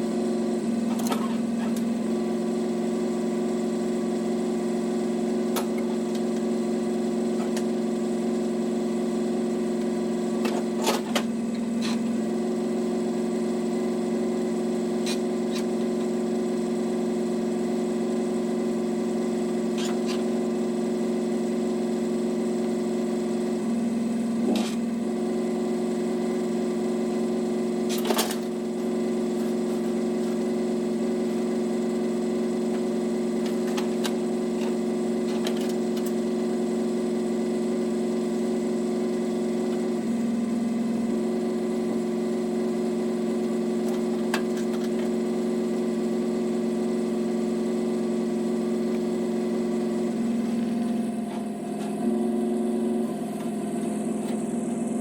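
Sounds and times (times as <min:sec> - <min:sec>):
engine running steadily: 0:00.0 - 0:55.0.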